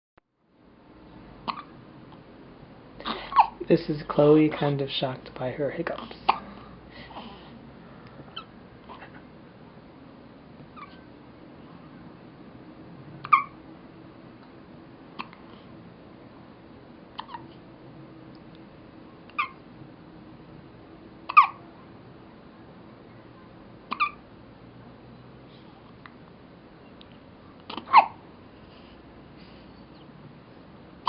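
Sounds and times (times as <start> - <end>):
baby hiccuping: 1.4 - 1.8, 3.0 - 3.7, 8.3 - 9.2, 13.2 - 13.6, 15.2 - 15.4, 17.1 - 17.6, 19.3 - 19.6, 21.3 - 21.6, 23.9 - 24.2, 27.7 - 28.2.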